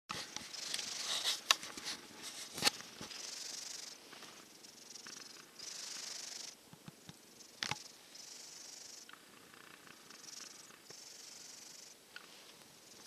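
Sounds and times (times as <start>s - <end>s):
kitten snoring: 3.1s - 6.6s, 7.4s - 12.0s.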